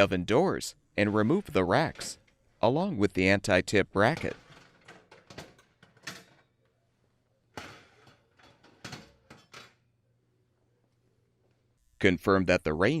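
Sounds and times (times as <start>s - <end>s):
oven racks clanking: 1.0s - 2.3s, 7.6s - 9.8s.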